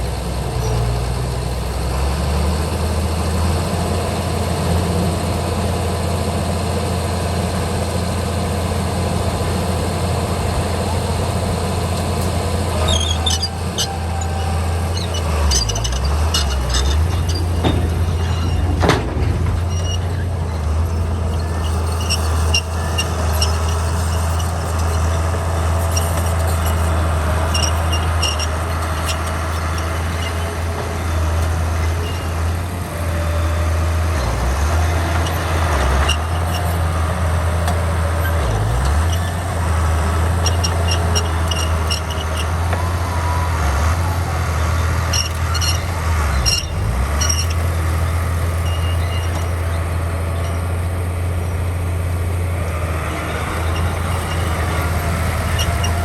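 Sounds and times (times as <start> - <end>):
bulldozer diesel engine running: 0.0 - 56.0
metallic clicks and squeaks: 11.8 - 56.0.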